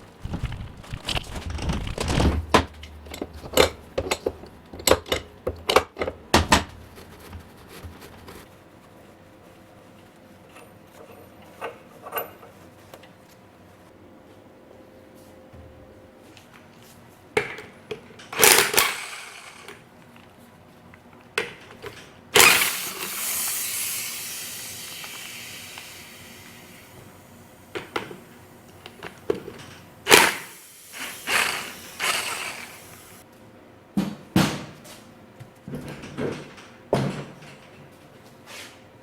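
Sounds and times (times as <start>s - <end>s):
tools and metal parts clattering: 0.2s - 6.7s, 10.5s - 12.7s.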